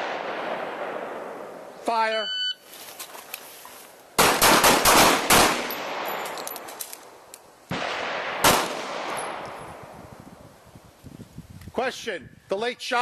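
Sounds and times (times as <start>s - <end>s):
handgun shots with echo: 7.8s - 9.6s.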